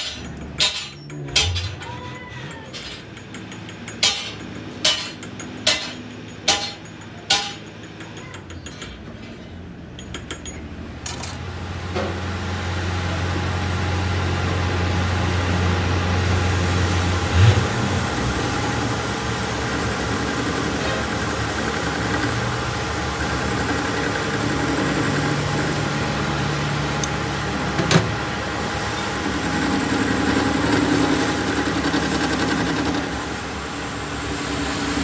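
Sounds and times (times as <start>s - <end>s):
hammer striking metal: 0.0s - 9.1s
workshop machine humming: 0.0s - 35.0s.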